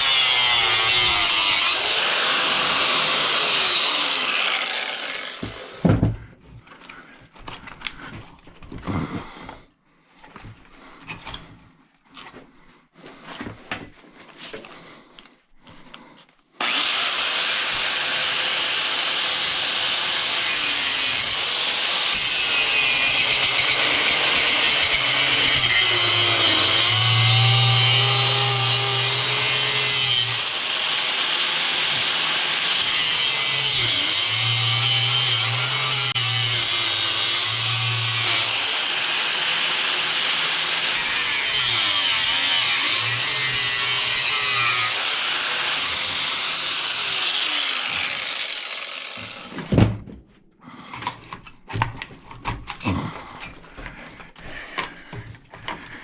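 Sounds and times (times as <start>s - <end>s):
power tool cutting: 0.0s - 5.9s, 16.6s - 49.7s.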